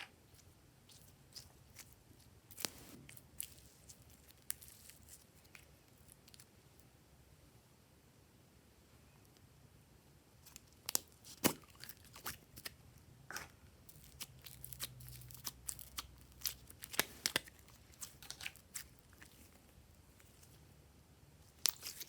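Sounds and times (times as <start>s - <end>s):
slime squished by hand: 10.4s - 20.6s.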